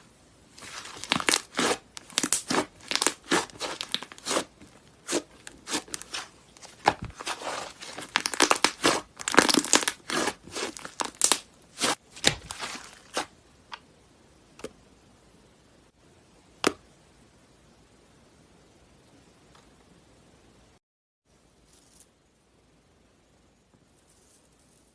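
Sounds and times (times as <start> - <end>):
slime crackling and popping: 0.6 - 13.3.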